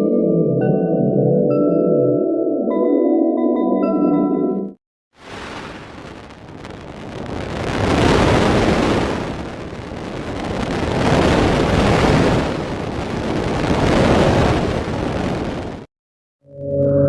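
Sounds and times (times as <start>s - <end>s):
rushing roaring noise: 5.2s - 15.9s.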